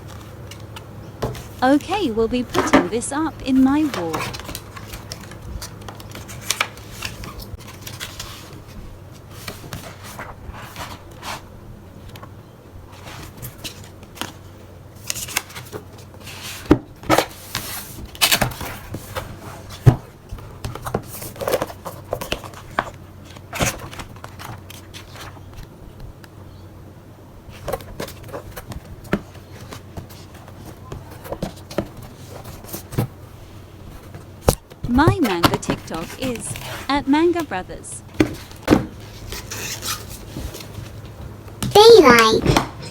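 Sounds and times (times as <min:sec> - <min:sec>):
faint steady hum: 0:00.0 - 0:04.4.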